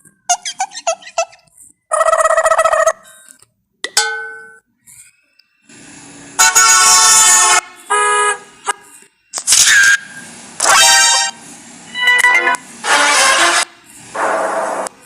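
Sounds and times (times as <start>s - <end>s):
comedy horn blasts: 6.4s - 8.5s, 10.6s - 11.4s, 12.0s - 13.8s.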